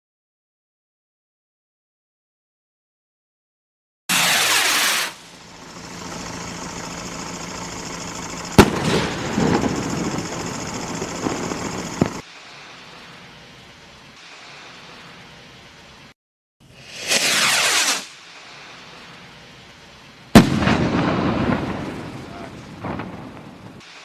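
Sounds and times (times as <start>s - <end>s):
firework bang: 4.1s - 5.5s, 8.6s - 12.2s, 16.8s - 18.9s, 20.3s - 24.0s
firework rocket hiss: 4.1s - 7.7s, 8.4s - 24.0s
firework crackling and pops: 4.1s - 24.0s.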